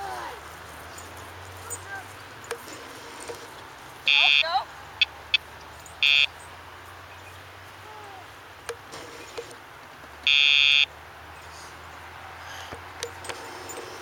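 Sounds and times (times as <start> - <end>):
electronic collar buzz: 4.1 - 4.6, 6.0 - 6.4, 10.3 - 10.9.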